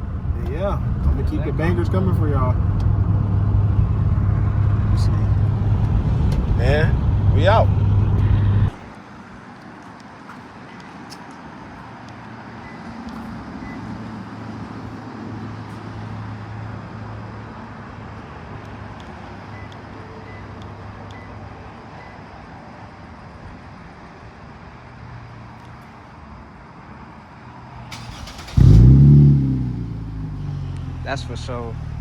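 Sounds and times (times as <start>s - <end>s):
car engine humming: 0.0s - 17.4s, 27.9s - 32.0s
road and traffic noise: 0.0s - 32.0s.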